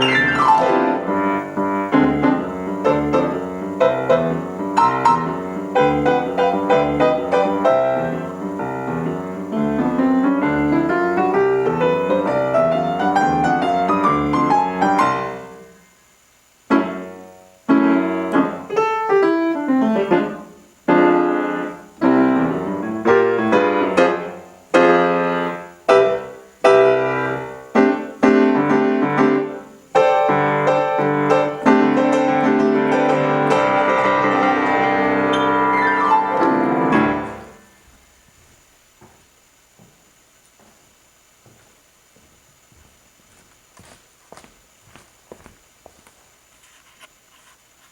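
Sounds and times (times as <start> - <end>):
solo piano playing: 0.0 - 15.7, 16.7 - 37.7.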